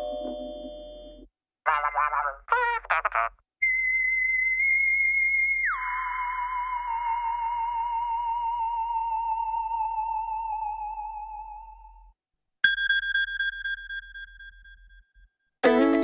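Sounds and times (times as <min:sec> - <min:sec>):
bell-like tone ringing: 0:12.6 - 0:15.4.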